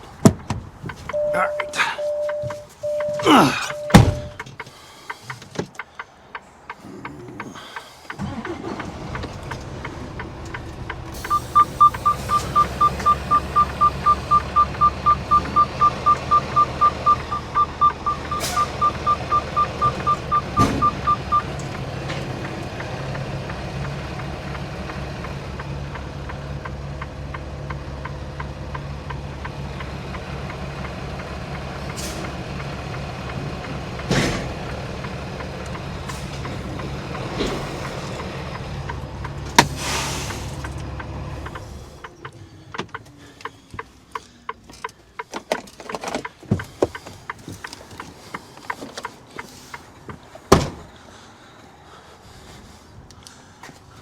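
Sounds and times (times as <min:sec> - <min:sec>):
diesel engine idling: 0:00.0 - 0:54.0
truck warning beeper: 0:01.1 - 0:04.6, 0:11.1 - 0:22.6
sharp clicks and knocks: 0:03.7 - 0:11.4, 0:40.6 - 0:50.9.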